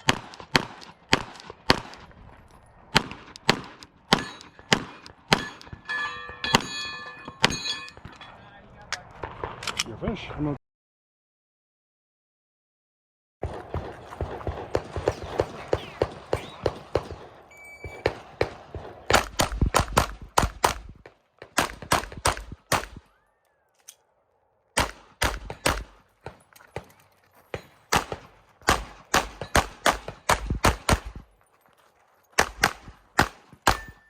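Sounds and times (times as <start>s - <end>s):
pistol firing rapid shots: 0.0s - 2.1s, 2.9s - 5.8s, 13.4s - 23.2s, 24.8s - 26.4s, 27.5s - 31.2s, 32.4s - 34.0s
other gunfire: 0.0s - 5.9s, 13.4s - 23.2s, 24.8s - 31.3s, 32.4s - 34.0s.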